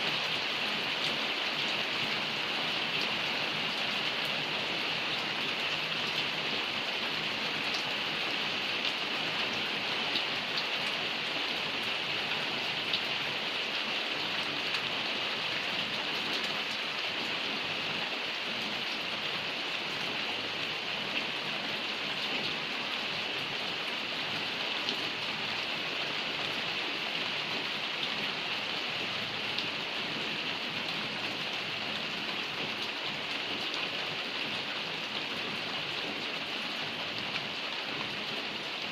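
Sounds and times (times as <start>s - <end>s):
heavy rain pattering: 0.0s - 38.9s.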